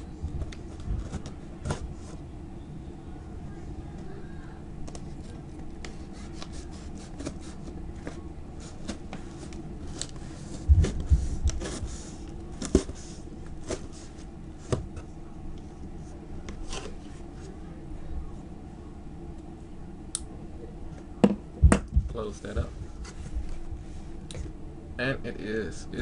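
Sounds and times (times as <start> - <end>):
cardboard rubbing and scraping: 5.9 - 15.1
heavy thumps: 21.2 - 23.9.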